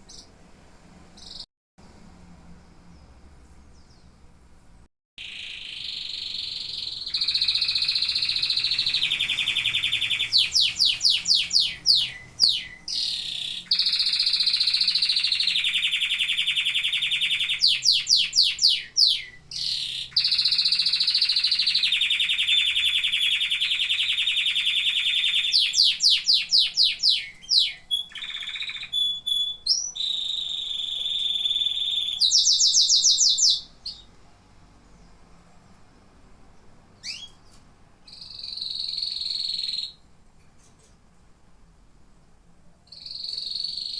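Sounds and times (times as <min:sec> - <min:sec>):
canary singing trills: 0:00.0 - 0:00.4, 0:01.1 - 0:01.5, 0:05.2 - 0:34.2, 0:37.0 - 0:40.1, 0:42.9 - 0:43.9.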